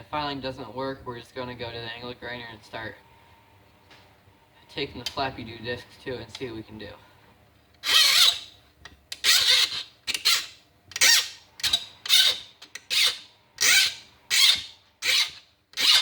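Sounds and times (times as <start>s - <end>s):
file rasping on steel: 7.8s - 8.5s, 9.2s - 16.0s.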